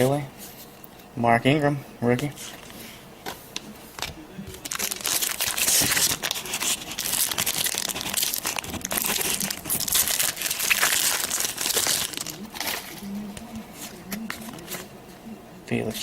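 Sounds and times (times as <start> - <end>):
wrapper crinkling and tearing: 4.0 - 13.1.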